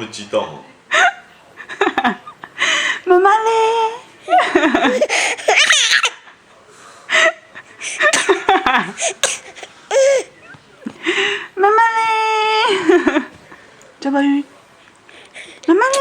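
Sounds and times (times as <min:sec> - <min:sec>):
hearty laughter with squeals: 0:04.3 - 0:06.2.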